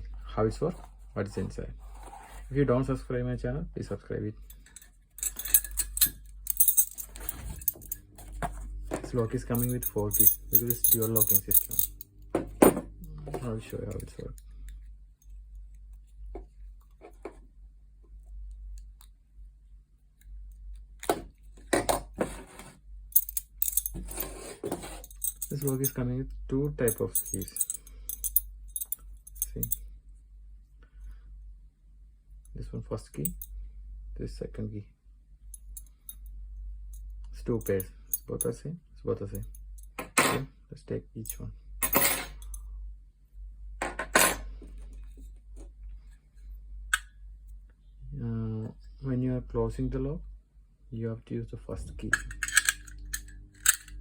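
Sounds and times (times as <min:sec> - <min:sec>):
keys jangling: 0:04.5 - 0:08.6, 0:09.4 - 0:12.0, 0:23.2 - 0:24.2, 0:25.0 - 0:26.0, 0:26.9 - 0:29.8, 0:52.2 - 0:54.0.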